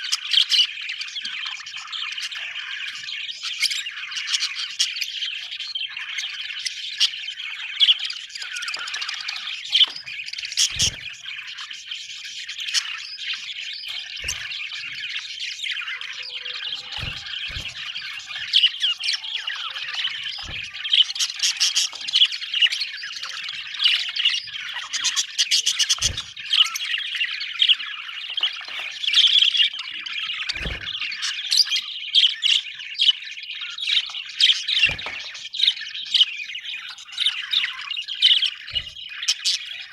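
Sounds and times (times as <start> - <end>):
budgerigars chattering: 0.0 - 39.9
low thumps: 16.6 - 18.6.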